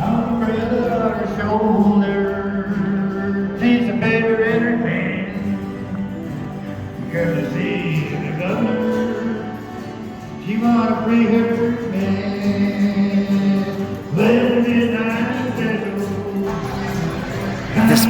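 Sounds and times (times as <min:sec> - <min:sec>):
man singing held notes: 0:17.8 - 0:18.0.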